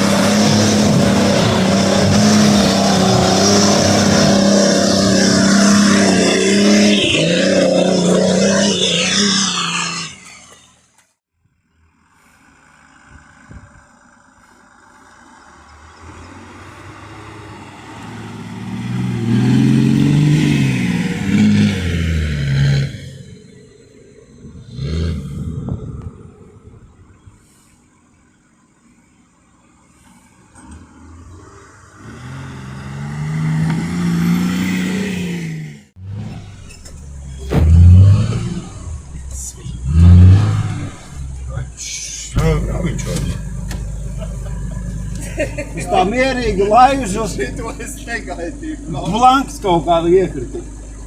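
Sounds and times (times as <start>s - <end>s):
off-road vehicle engine revving: 0.0s - 10.9s, 11.7s - 28.4s, 29.0s - 51.0s
loud thump: 37.4s - 38.6s.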